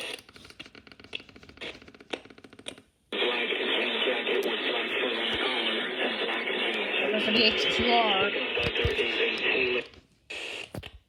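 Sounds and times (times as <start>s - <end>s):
muffled hissy radio signal: 3.2s - 9.9s
distorted radio crackling stutter: 3.2s - 11.0s.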